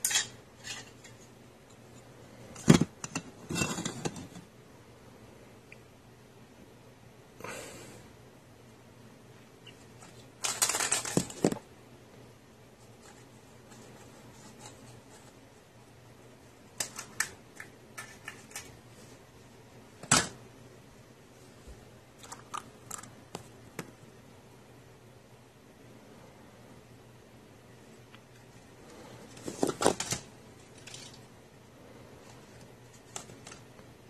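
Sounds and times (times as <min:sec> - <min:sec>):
rustling: 0:09.6 - 0:11.7, 0:28.2 - 0:34.0.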